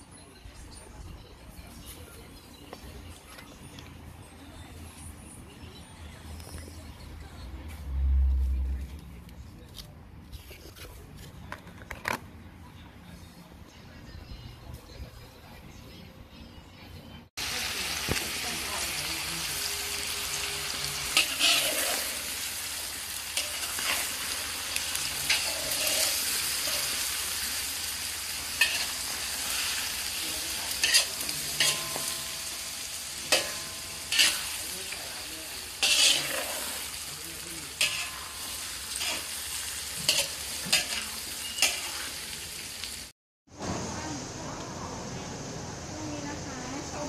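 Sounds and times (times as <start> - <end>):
food sizzling in a pan: 17.4 - 47.0.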